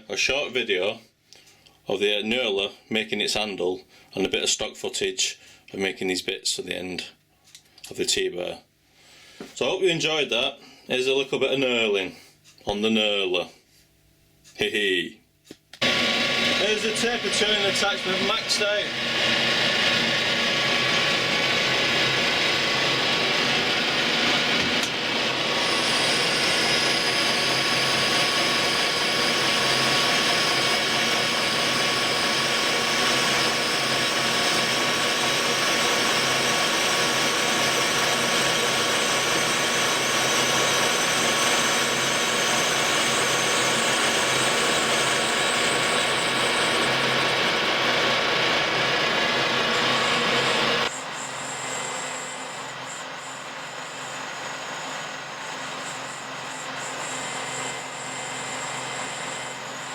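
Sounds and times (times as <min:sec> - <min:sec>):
metal lathe whine: 0:15.8 - 0:59.9.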